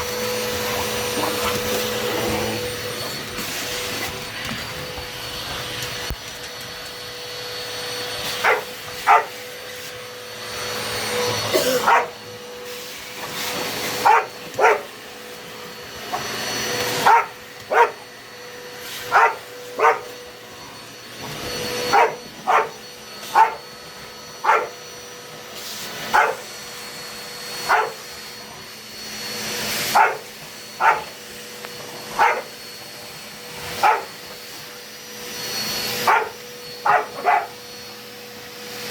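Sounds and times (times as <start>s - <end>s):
vacuum cleaner motor whine: 0.0s - 38.9s
dog barking: 8.3s - 9.4s, 11.6s - 12.3s, 13.9s - 15.0s, 16.9s - 18.1s, 19.0s - 20.2s, 21.8s - 23.7s, 24.4s - 24.8s, 26.0s - 26.5s, 27.6s - 28.2s, 29.8s - 31.2s, 32.0s - 32.6s, 33.7s - 34.3s, 36.0s - 37.6s.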